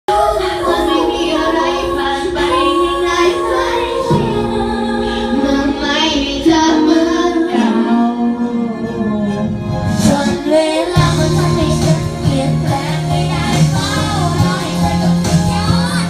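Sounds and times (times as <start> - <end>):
music: 0.1 - 16.0.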